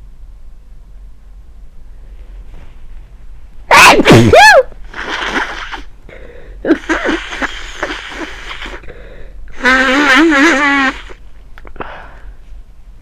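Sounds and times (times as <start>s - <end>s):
congested nasal breathing: 4.9s - 11.2s.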